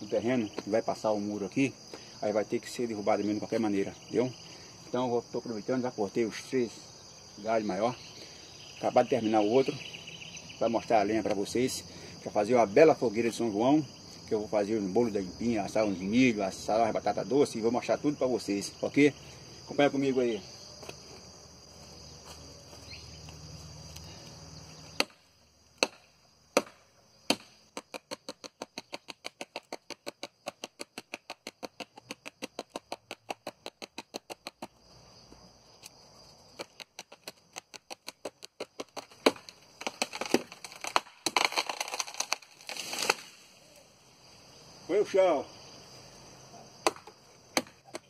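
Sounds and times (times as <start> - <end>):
axe chopping wood: 25.0 - 25.2, 25.8 - 34.8, 36.6 - 41.5, 46.8 - 48.0
wood cracking: 36.6 - 43.5.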